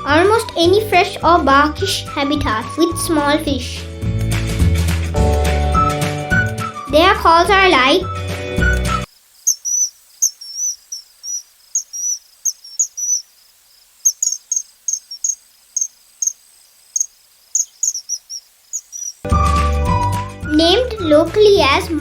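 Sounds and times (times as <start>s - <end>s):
kingfisher shrill whistled calls: 9.5s - 13.4s, 14.0s - 16.4s, 17.0s - 19.3s.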